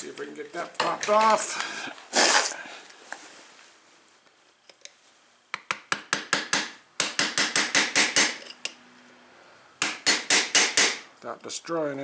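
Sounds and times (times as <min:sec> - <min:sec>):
hammer tapping on metal: 0:05.5 - 0:08.4, 0:09.8 - 0:11.0.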